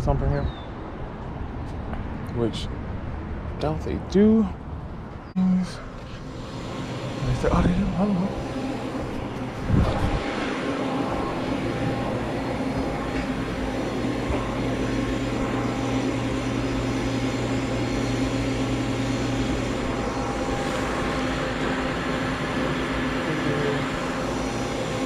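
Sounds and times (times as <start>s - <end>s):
steady machine hum: 3.2s - 25.0s
held low tones: 7.1s - 25.0s.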